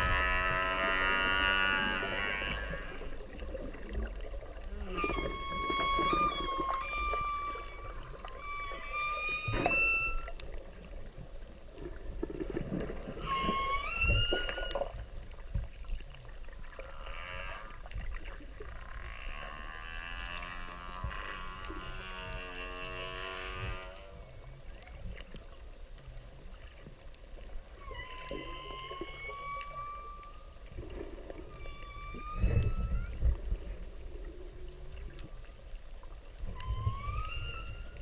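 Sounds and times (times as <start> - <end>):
whale whistle calls: 0.0 - 3.2, 4.7 - 10.4, 13.1 - 15.1, 19.1 - 24.4, 27.8 - 33.8, 36.4 - 38.0
whale buzzing pulsed call: 0.0 - 11.0, 12.8 - 15.5, 16.6 - 24.9, 27.6 - 38.0.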